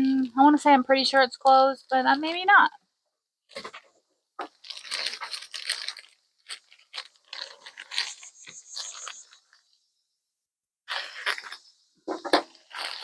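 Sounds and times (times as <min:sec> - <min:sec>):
packaging crinkling and tearing: 0:03.5 - 0:09.6, 0:12.4 - 0:13.0.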